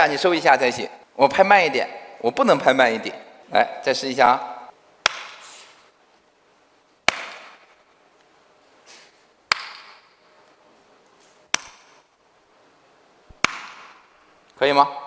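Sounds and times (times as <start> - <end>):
sharp hand claps: 5.0 - 5.4, 7.1 - 7.7, 9.5 - 10.1, 11.6 - 12.0.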